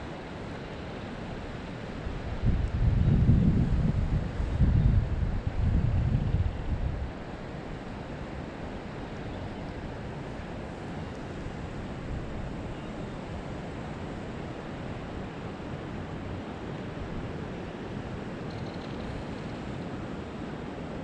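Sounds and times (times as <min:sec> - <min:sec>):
wind buffeting microphone: 0:02.0 - 0:08.6
strong wind rushing: 0:02.3 - 0:07.1.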